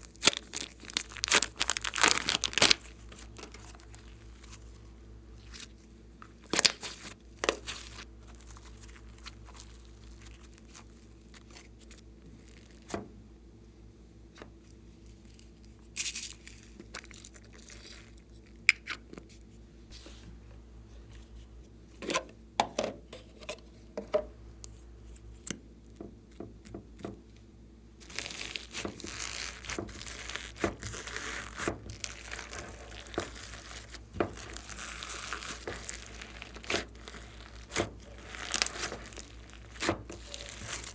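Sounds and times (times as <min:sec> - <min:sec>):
slime squeezed by hand: 0:00.0 - 0:04.7, 0:28.0 - 0:40.9.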